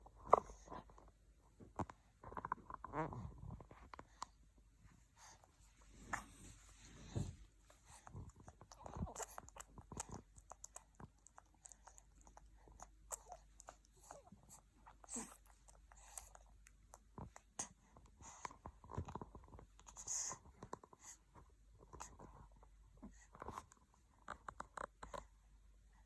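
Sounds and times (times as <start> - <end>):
baby mouth smacking and clicking: 8.4 - 14.2.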